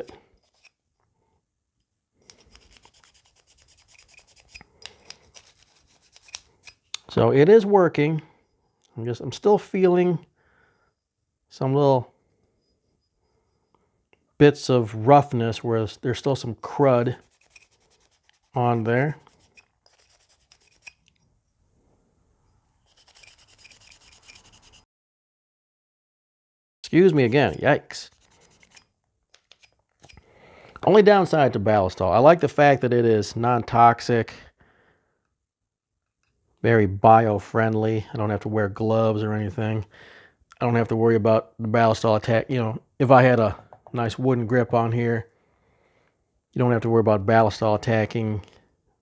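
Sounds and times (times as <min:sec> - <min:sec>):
brush scrubbing metal: 0:00.0 - 0:00.7, 0:02.3 - 0:06.8, 0:16.6 - 0:21.0, 0:22.8 - 0:24.8, 0:26.9 - 0:28.8.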